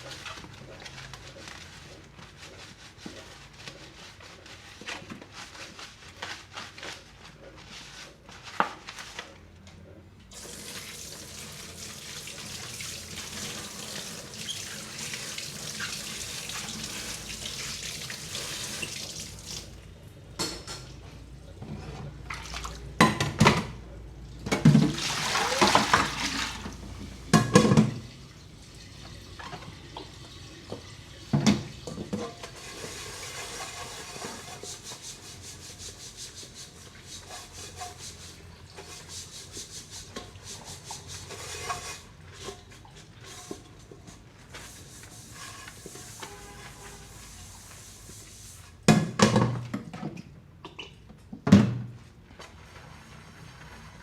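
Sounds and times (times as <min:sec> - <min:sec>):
dishes clattering: 0:20.4 - 0:21.0, 0:27.3 - 0:28.0
tap running into sink: 0:29.4 - 0:32.2.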